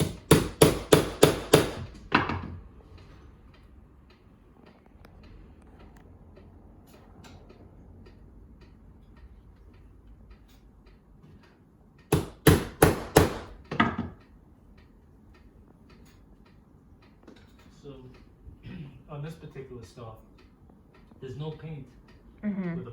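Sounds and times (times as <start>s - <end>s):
hard knocks on wooden window: 0.0s - 2.6s, 12.1s - 14.2s.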